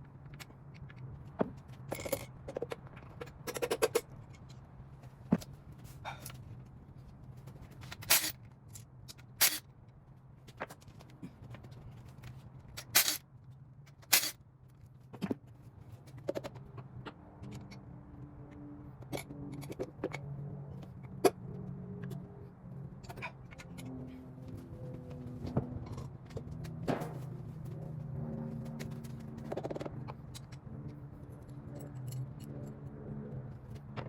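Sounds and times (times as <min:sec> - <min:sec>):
metal tools knocking and scraping: 0:01.9 - 0:04.4, 0:12.8 - 0:13.2.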